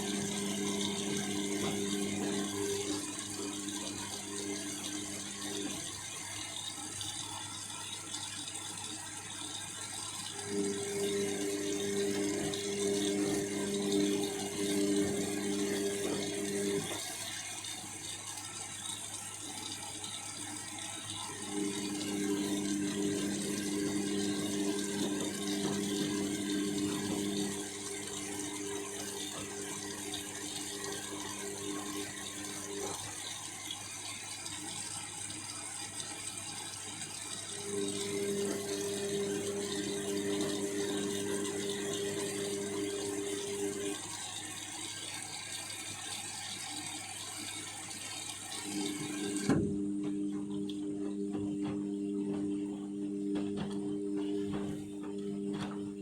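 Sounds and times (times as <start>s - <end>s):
washing machine motor humming: 0.0s - 56.0s
washing machine drum tumbling: 21.7s - 32.8s, 48.8s - 56.0s.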